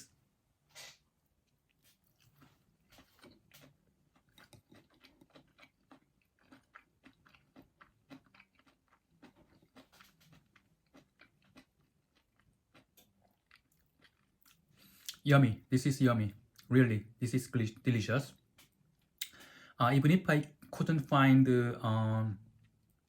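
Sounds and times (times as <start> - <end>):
close chewing with crunches: 1.5 - 15.2.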